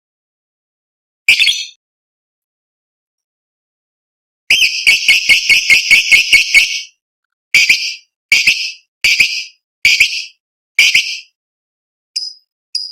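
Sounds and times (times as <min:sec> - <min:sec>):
lovebird shrill rapid chirps: 0:01.3 - 0:01.8, 0:04.5 - 0:07.0, 0:07.6 - 0:11.3, 0:12.2 - 0:12.9.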